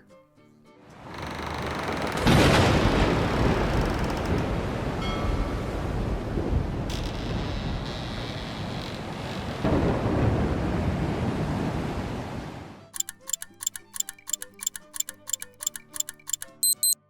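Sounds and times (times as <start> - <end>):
clock ticking with ring: 13.0 - 17.0
high beep: 13.0 - 17.0.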